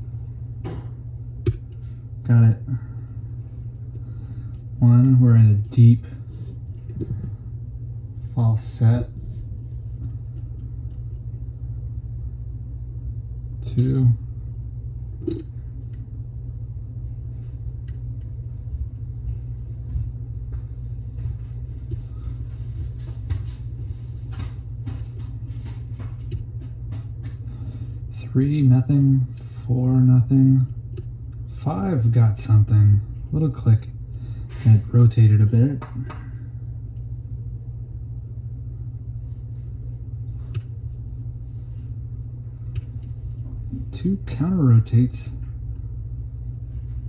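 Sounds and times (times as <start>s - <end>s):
low rumble or hum: 0.0s - 47.0s.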